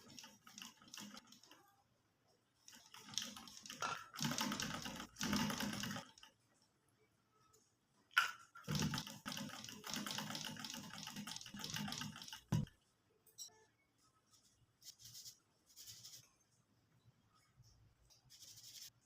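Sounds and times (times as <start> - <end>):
sewing machine rattling: 0.0 - 1.6, 2.7 - 6.3, 8.6 - 12.7.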